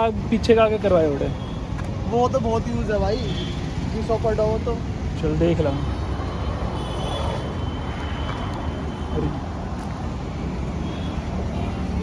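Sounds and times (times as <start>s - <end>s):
road traffic rumble: 0.0s - 12.0s.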